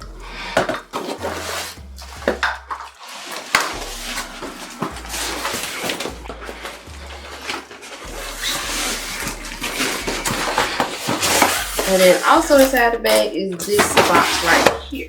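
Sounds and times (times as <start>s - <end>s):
parts knocking and clinking: 0.0s - 7.6s
bag and box rustling: 0.0s - 15.0s.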